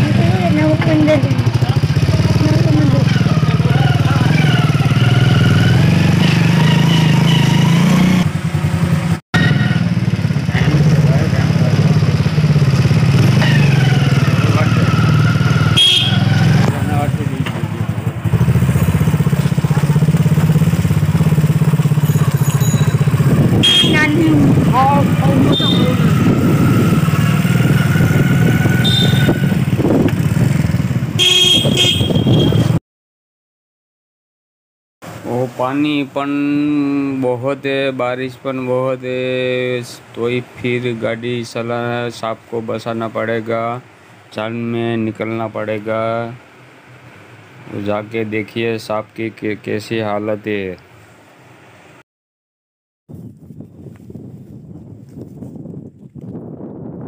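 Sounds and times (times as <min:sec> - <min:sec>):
motorcycle engine running: 0:00.0 - 0:32.8
short horn toots: 0:15.6 - 0:16.7, 0:22.6 - 0:24.2, 0:25.4 - 0:26.1, 0:28.7 - 0:29.7, 0:31.2 - 0:32.8
wind noise: 0:22.7 - 0:32.8, 0:53.1 - 0:57.0.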